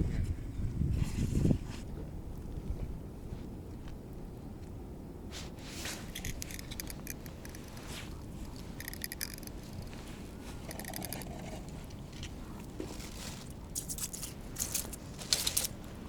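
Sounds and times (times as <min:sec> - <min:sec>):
wind on microphone: 0:00.0 - 0:04.4
crunching and scraping on snow: 0:09.6 - 0:15.8.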